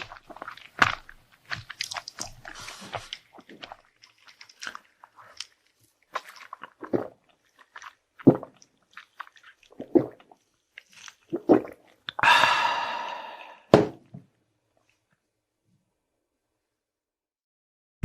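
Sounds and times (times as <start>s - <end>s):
chewing: 0.0s - 12.2s.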